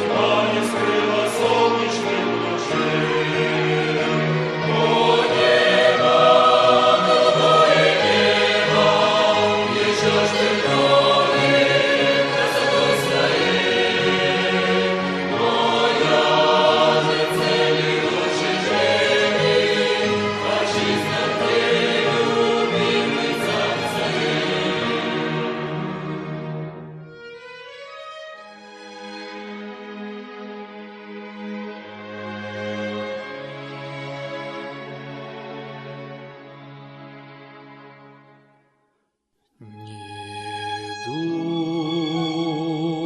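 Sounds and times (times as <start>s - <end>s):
choir singing a hymn: 0.0s - 26.6s.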